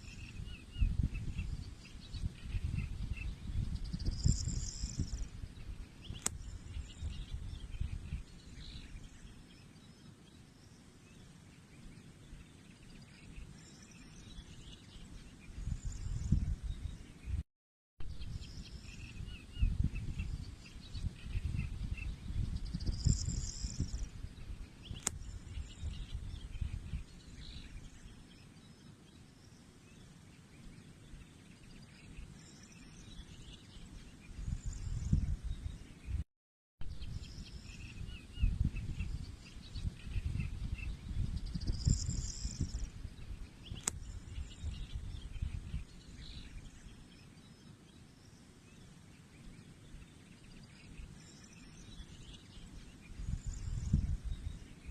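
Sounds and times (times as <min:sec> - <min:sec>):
birds chirping: 0:00.0 - 0:17.4, 0:18.2 - 0:36.2, 0:37.0 - 0:54.9
sharp click: 0:06.1 - 0:06.4, 0:24.9 - 0:25.2, 0:43.7 - 0:44.1.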